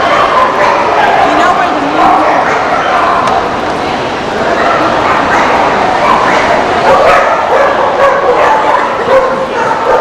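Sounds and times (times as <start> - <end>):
many dogs barking and yipping: 0.0 - 3.6, 4.3 - 10.0.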